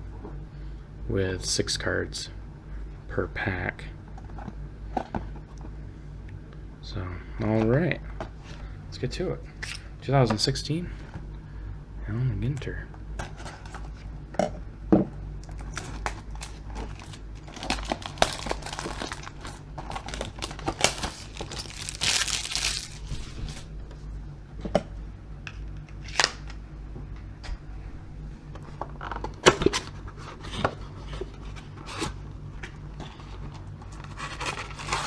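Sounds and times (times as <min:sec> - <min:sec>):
packaging rustling and clicking: 0:15.4 - 0:23.7
packaging tearing: 0:15.6 - 0:23.7, 0:34.1 - 0:35.0.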